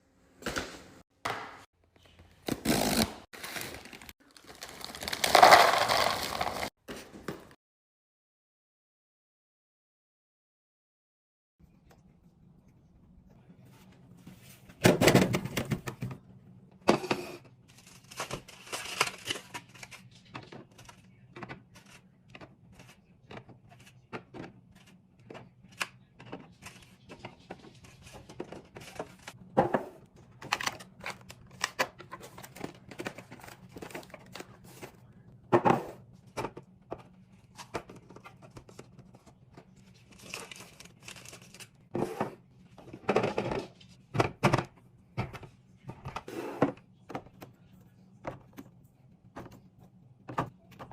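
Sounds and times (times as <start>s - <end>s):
plastic packaging crinkling: 2.7s - 6.7s.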